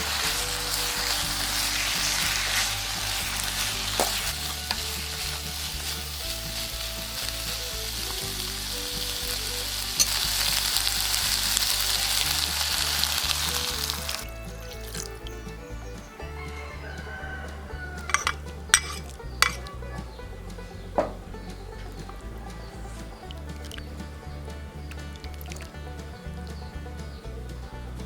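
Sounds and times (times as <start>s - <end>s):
food sizzling in a pan: 0.0s - 14.2s
background music with beat: 0.0s - 28.0s.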